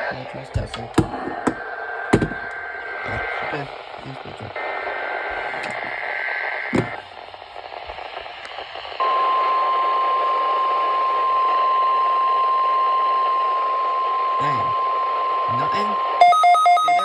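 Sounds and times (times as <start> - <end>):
radio static hiss: 0.0 - 17.0
steady warning alarm tone: 0.1 - 4.4, 9.0 - 17.0.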